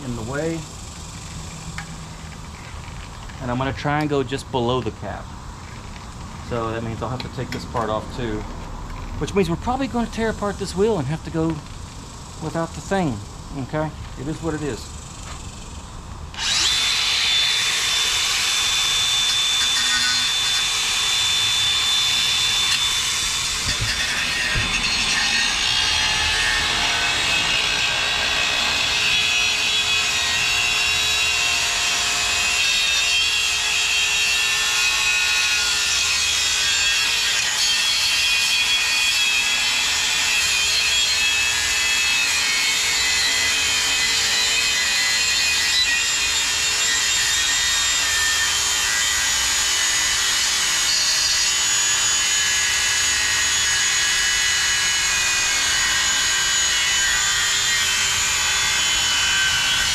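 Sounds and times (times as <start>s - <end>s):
angle grinder cutting steel: 16.3s - 59.9s.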